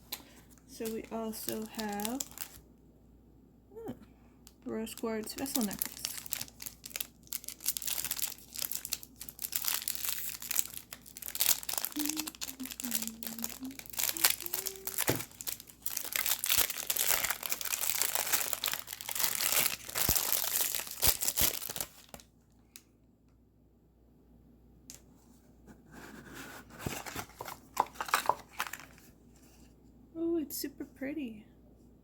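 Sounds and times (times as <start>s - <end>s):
packaging crinkling and tearing: 0.1s - 2.6s, 4.8s - 22.3s, 26.8s - 29.1s.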